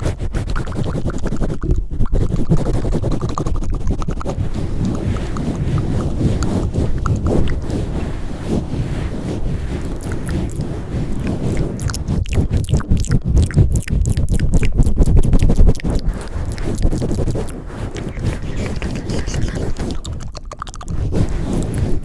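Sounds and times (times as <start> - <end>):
crackling and rubbing on microphone: 0.0 - 22.0
heavy low rumble: 2.9 - 20.3.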